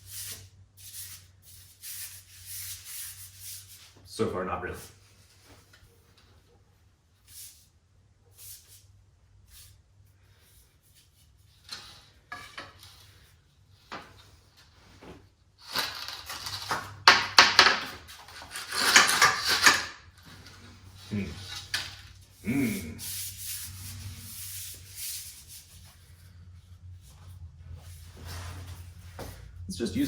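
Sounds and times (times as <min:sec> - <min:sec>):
wood scraping over tubing: 0:10.7 - 0:29.7.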